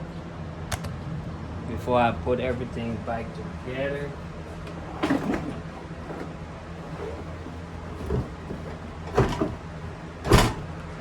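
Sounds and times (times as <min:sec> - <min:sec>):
steady low hum: 0:00.0 - 0:11.0
sharp knocks and clunks: 0:06.9 - 0:10.8.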